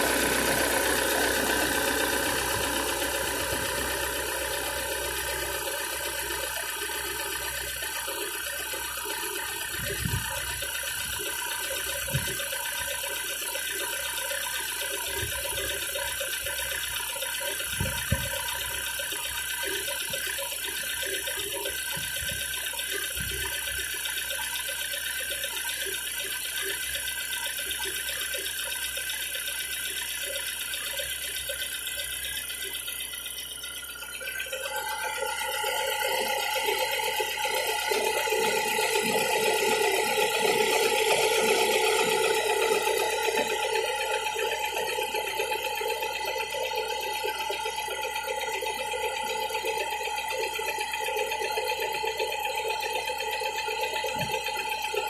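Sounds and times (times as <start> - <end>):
car engine clattering: 0.0 - 24.3.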